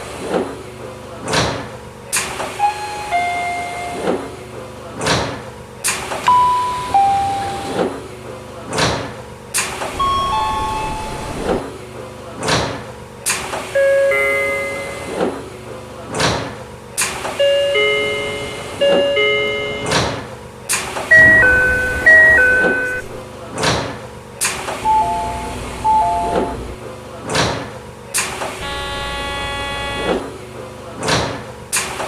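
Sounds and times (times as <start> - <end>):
train sliding doors: 0.0 - 32.0
electronic door chime: 6.3 - 7.8, 10.0 - 11.6, 13.8 - 15.2, 17.4 - 20.1, 21.1 - 23.3, 24.8 - 26.8, 28.6 - 30.1.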